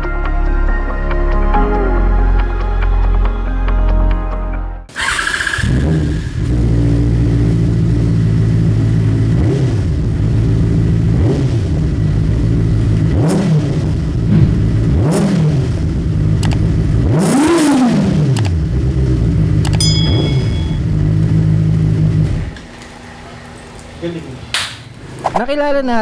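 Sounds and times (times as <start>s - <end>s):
motorcycle engine revving: 4.9s - 25.3s.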